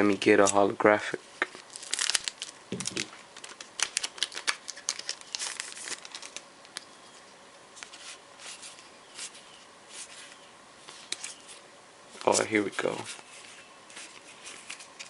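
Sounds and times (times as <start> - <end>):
foil wrapper crinkling: 1.4 - 6.9.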